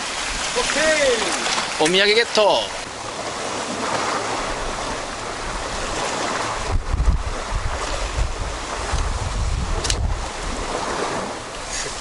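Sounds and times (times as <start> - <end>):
waves washing against rocks: 0.0 - 12.0
wind buffeting microphone: 2.8 - 12.0.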